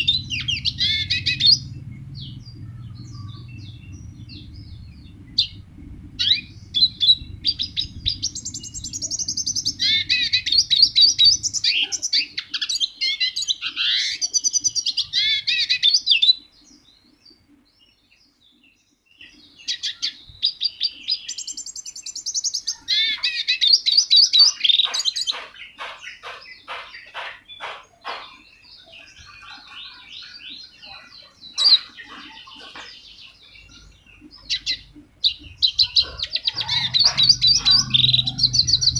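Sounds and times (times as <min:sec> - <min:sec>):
songbird warbling: 0:00.0 - 0:12.6, 0:22.6 - 0:38.9
soft bird calls: 0:00.0 - 0:18.1, 0:19.2 - 0:38.9.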